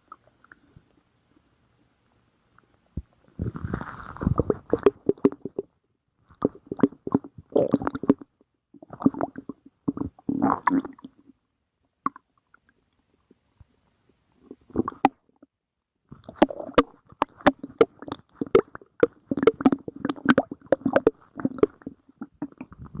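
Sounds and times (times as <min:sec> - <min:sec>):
stomach growling: 0:03.0 - 0:05.7, 0:06.3 - 0:11.2, 0:14.5 - 0:15.2, 0:16.1 - 0:23.0.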